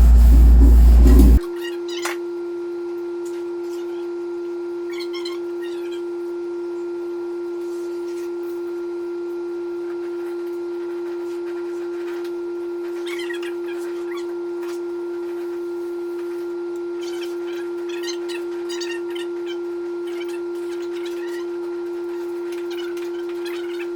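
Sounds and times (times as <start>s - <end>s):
steady single-pitched hum: 0.0s - 1.4s.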